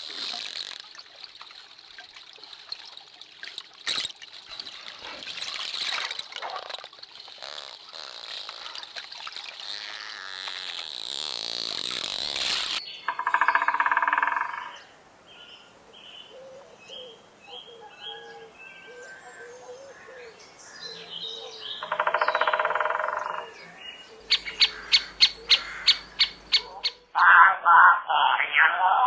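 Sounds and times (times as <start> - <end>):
buzzing trilled animal calls: 7.3 - 14.7, 24.2 - 27.0.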